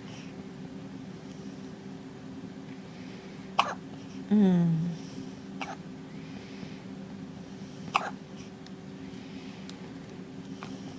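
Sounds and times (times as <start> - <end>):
steady low hum: 0.0 - 10.9
baby hiccuping: 3.6 - 3.8, 8.0 - 8.2.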